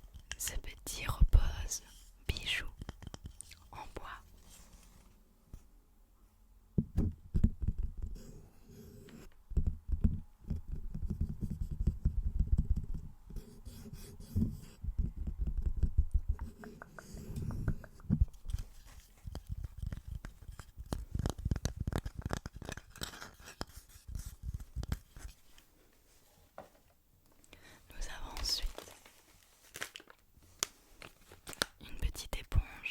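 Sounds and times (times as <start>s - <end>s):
tapping and scratching on wood: 2.7s - 3.5s, 14.3s - 25.3s.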